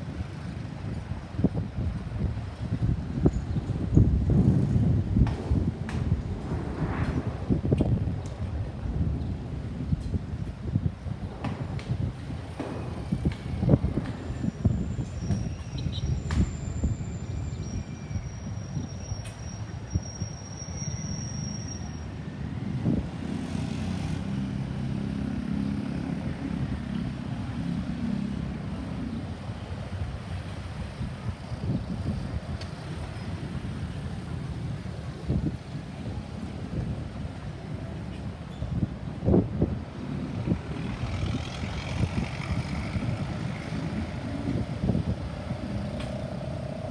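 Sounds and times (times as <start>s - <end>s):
wind buffeting microphone: 0.0s - 21.2s, 22.1s - 46.9s
steady traffic rumble: 0.0s - 46.9s
vehicle engine hum: 32.4s - 46.9s.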